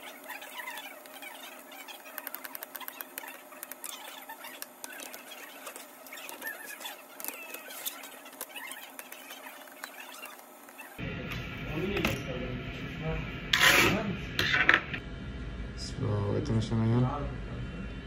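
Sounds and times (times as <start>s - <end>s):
short squeaky chirps: 0.0s - 11.0s.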